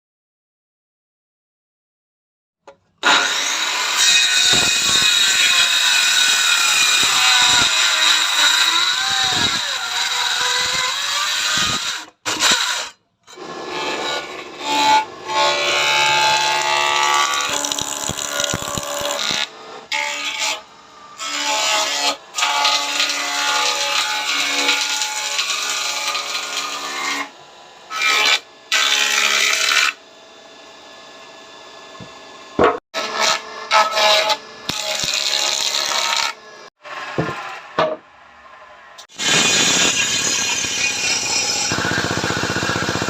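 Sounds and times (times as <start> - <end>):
wood cutting noise: 3.0 - 38.1, 39.0 - 43.0
power tool motor whine: 15.1 - 19.9, 39.1 - 43.0.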